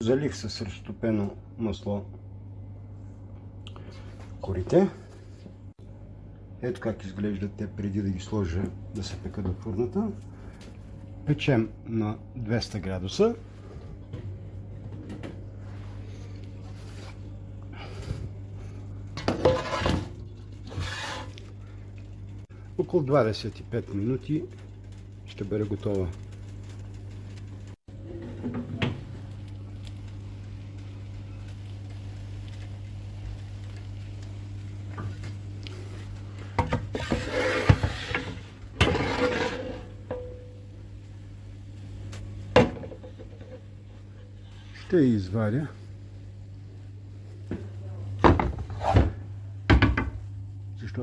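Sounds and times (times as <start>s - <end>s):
steady low hum: 0.0s - 51.0s
metal baking pan scraping: 19.2s - 21.4s, 36.8s - 40.2s.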